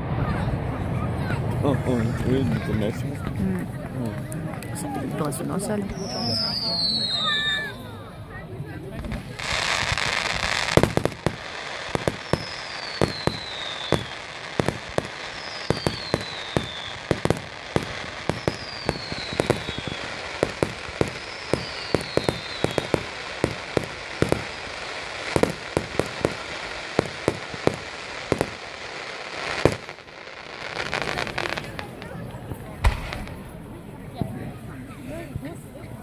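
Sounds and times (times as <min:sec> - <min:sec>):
firework bangs and pops: 0:00.0 - 0:07.7, 0:08.8 - 0:34.6
firework crackling: 0:00.0 - 0:35.4
falling firework whistles: 0:05.9 - 0:08.0, 0:09.2 - 0:31.9, 0:32.8 - 0:33.6.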